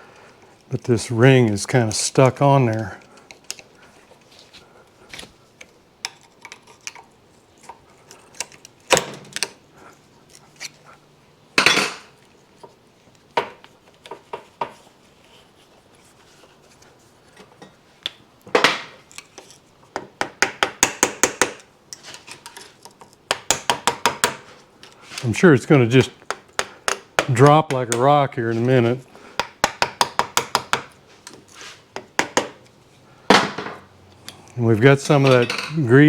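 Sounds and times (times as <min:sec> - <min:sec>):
hand tools clinking on metal: 0:35.0 - 0:36.0.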